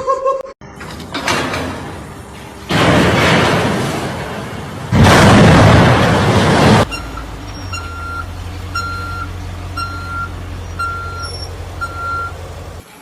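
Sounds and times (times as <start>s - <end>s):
engine running hum: 0.6s - 13.0s
reversing alarm beeping: 6.9s - 12.4s.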